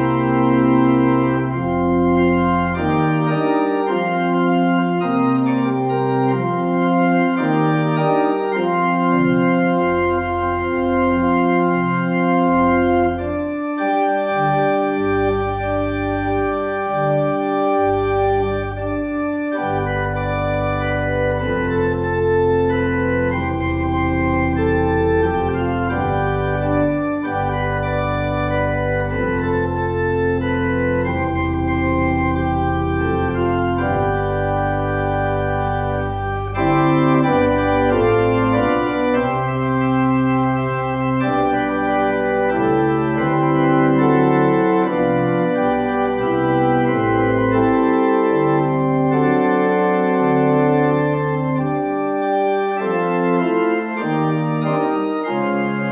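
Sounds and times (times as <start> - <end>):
organ playing slow chords: 0.0 - 55.9.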